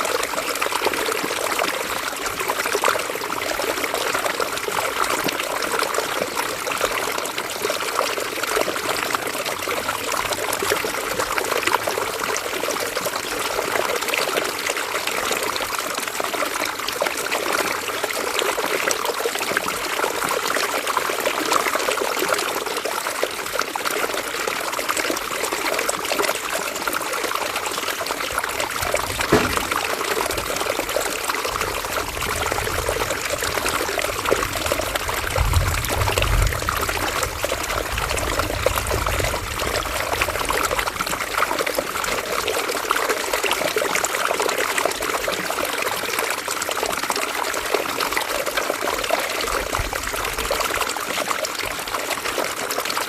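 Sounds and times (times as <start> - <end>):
river water flowing: 0.0 - 36.0.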